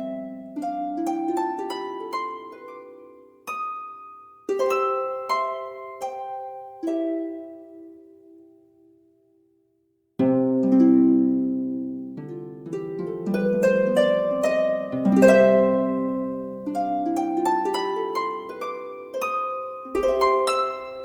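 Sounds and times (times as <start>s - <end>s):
harp arpeggios: 0.0s - 8.5s, 10.2s - 21.0s.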